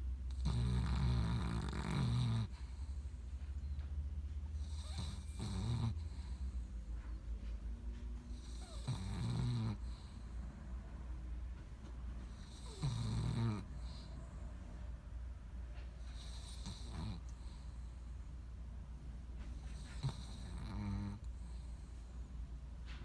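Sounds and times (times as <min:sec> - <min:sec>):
steady low hum: 0:00.0 - 0:23.0
slow snoring: 0:00.3 - 0:03.1, 0:04.6 - 0:06.6, 0:08.4 - 0:10.3, 0:12.3 - 0:14.2, 0:16.1 - 0:17.7, 0:19.8 - 0:21.8.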